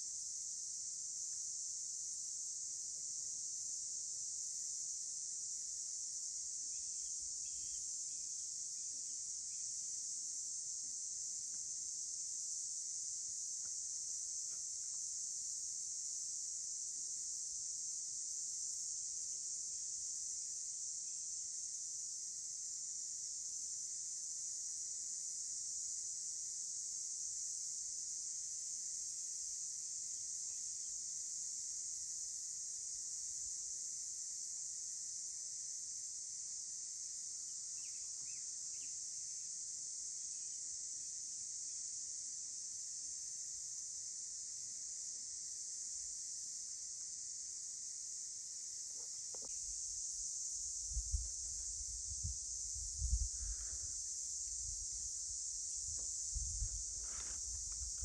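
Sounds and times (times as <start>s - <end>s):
insects chorus: 0.0s - 58.0s
faint bird chirps: 6.8s - 8.2s, 37.8s - 38.9s.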